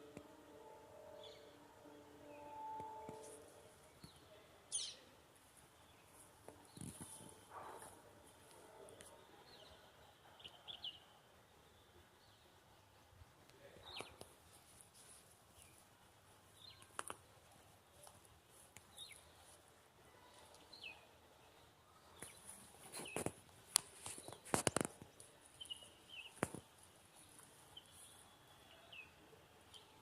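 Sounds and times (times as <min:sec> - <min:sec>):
bird chirping: 0:24.1 - 0:30.0.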